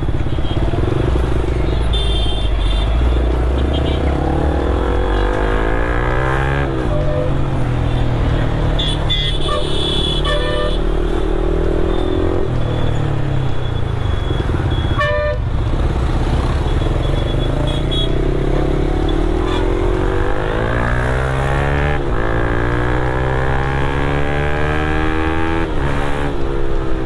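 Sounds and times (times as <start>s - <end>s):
road and wind rush: 0.0s - 27.0s
motorcycle engine revving: 3.4s - 8.8s, 15.5s - 26.7s.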